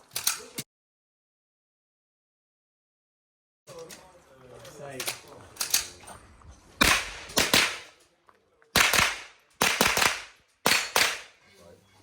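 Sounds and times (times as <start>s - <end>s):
rifle shots: 6.8s - 7.9s, 8.8s - 11.3s.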